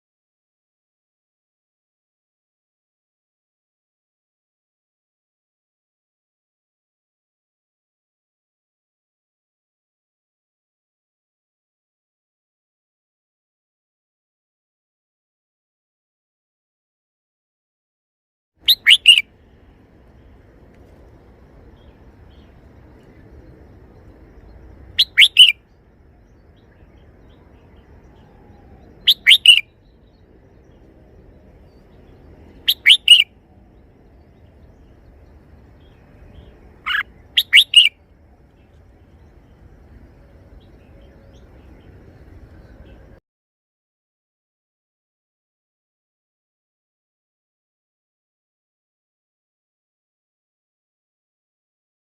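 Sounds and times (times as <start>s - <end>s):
faint low hum: 18.6s - 43.2s.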